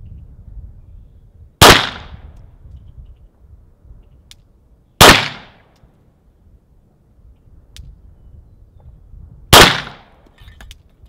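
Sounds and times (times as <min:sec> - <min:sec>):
handgun shots: 0:01.6 - 0:02.1, 0:05.0 - 0:05.6, 0:09.5 - 0:10.1.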